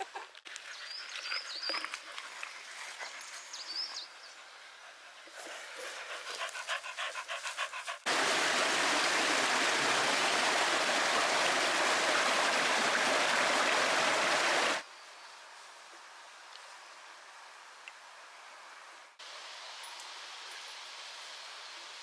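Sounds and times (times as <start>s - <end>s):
steady hiss: 4.2s - 22.0s
dog panting: 4.8s - 8.1s
stream water rushing: 8.1s - 14.8s.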